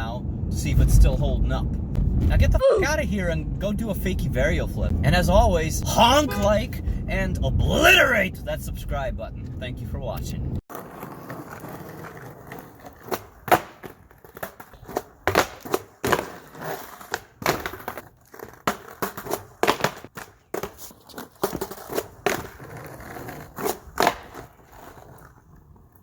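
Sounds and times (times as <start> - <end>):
skateboard clacking: 10.7 - 26.0.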